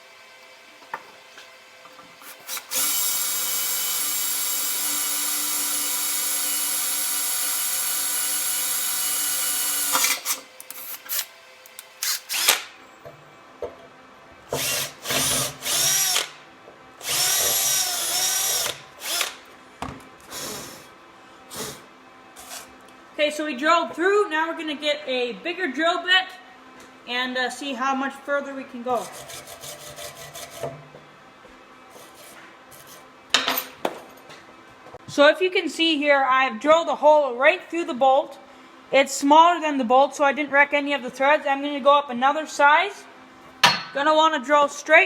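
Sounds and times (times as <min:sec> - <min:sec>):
electric drill boring: 0:02.2 - 0:12.7, 0:14.5 - 0:16.4, 0:17.0 - 0:19.4, 0:20.3 - 0:20.9.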